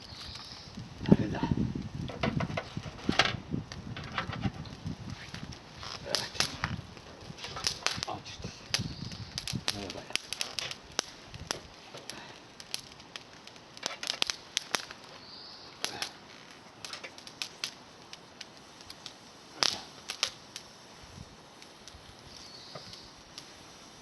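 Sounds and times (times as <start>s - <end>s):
campfire crackling and popping: 0.0s - 24.0s.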